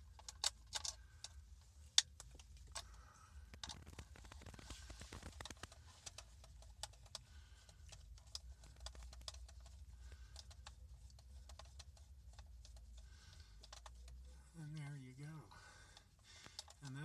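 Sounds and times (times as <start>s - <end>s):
plastic parts clicking and tapping: 0.0s - 14.2s, 16.0s - 17.0s
steady low hum: 0.0s - 17.0s.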